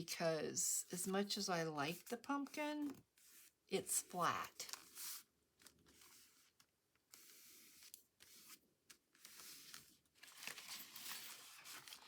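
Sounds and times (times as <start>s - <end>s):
paper rustling and sliding: 4.7s - 12.0s.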